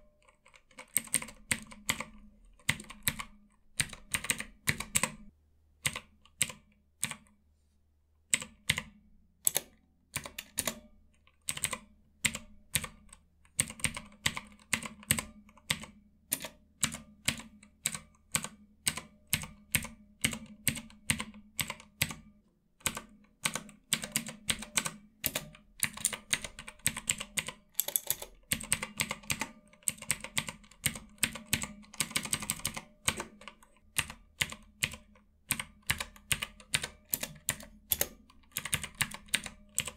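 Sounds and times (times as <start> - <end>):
clicky keys being pressed: 22.9 - 39.9.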